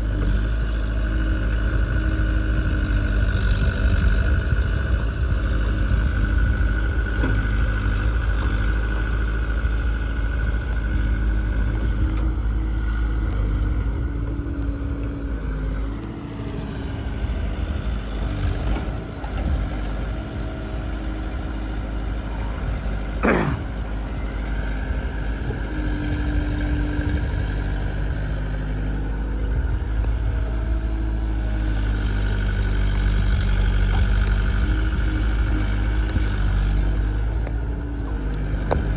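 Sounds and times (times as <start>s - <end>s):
heavy diesel machinery rumbling: 0.0s - 38.9s.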